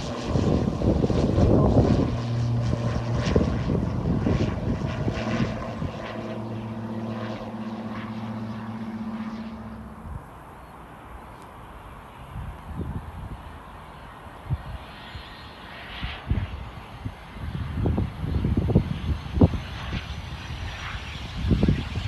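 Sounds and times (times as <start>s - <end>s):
wind buffeting microphone: 0.0s - 10.4s, 12.3s - 13.7s, 16.1s - 22.0s
aircraft engines droning: 0.0s - 22.0s.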